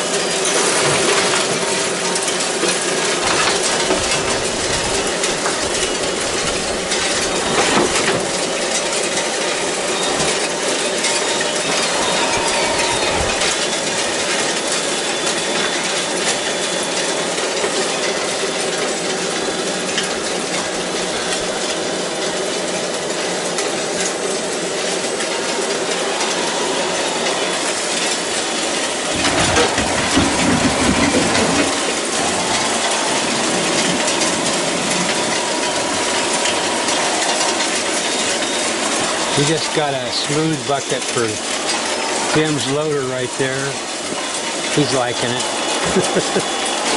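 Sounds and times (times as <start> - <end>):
small electric motors whining: 9.5 - 18.2, 31.1 - 46.9.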